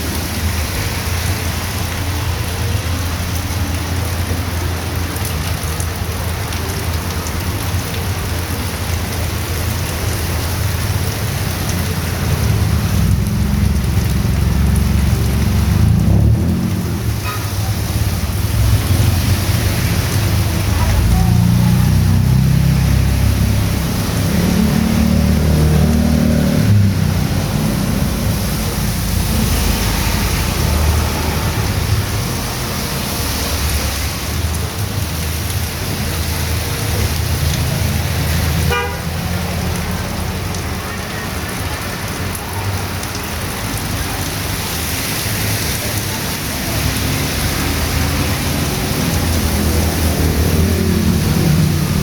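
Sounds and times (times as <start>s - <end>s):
heavy rain pouring: 0.0s - 52.0s
vehicles passing: 0.0s - 52.0s
horn toot: 38.7s - 39.1s.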